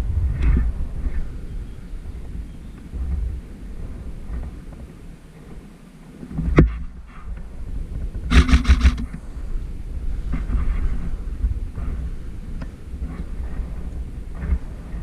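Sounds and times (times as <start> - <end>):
wind rumble on microphone: 0.0 - 15.0
airsoft gun rapid burst: 8.3 - 9.0
sharp crack: 8.3 - 9.2.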